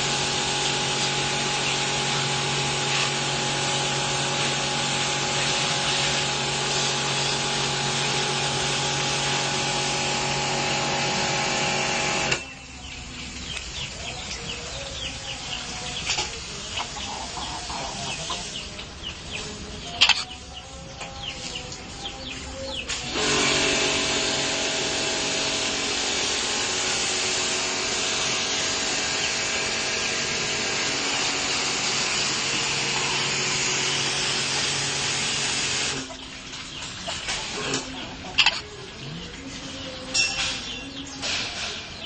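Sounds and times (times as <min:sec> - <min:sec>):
small motor running: 0:00.0 - 0:12.5, 0:23.0 - 0:36.1
chickens chirping: 0:12.4 - 0:23.7, 0:27.8 - 0:42.0.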